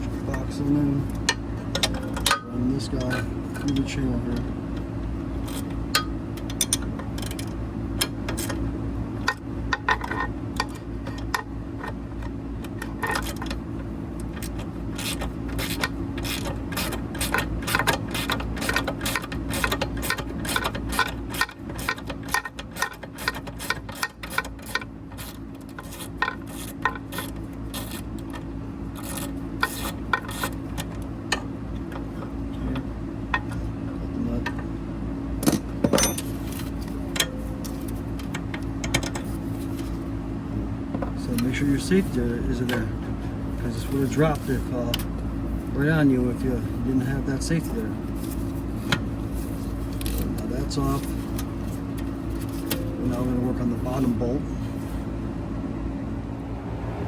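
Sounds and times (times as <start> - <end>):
steady low hum: 0.0 - 57.0
metal scraping and clinking: 35.4 - 40.0.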